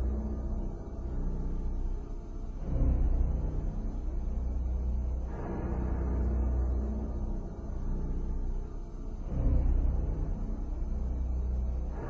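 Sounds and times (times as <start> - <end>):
dark ominous music: 0.0 - 12.0.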